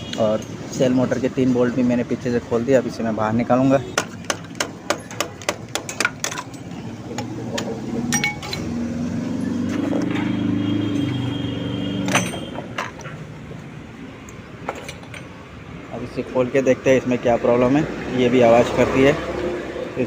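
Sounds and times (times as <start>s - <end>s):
metal tapping and clinking: 4.0s - 8.8s, 12.1s - 13.2s, 14.3s - 15.4s.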